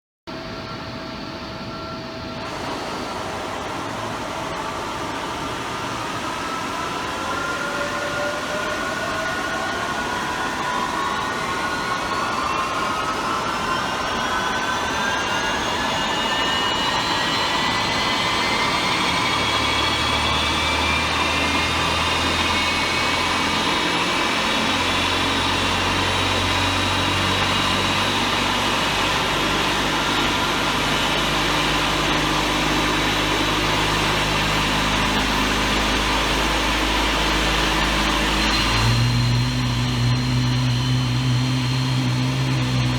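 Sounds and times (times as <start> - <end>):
jet engine rising whine: 0.3 - 42.9
rushing roar: 2.5 - 13.6
low hum: 17.1 - 42.9.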